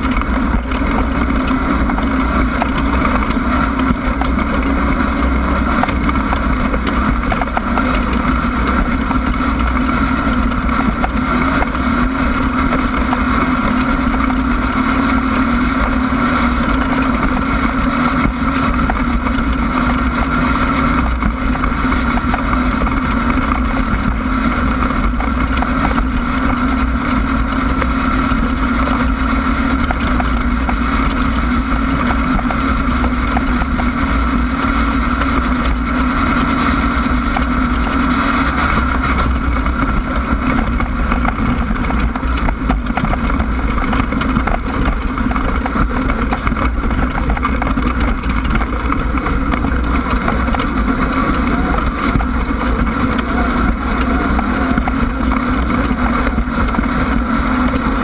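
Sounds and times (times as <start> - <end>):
race car engine running: 0.0 - 58.0.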